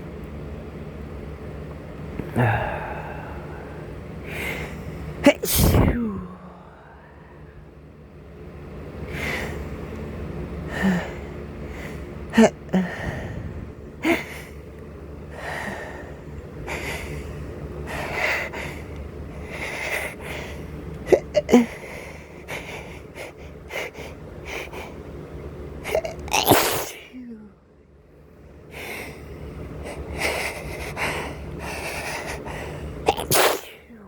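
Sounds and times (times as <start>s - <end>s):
steady low hum: 0.0s - 34.0s
man wheezing and gasping: 2.2s - 4.8s, 29.8s - 33.0s.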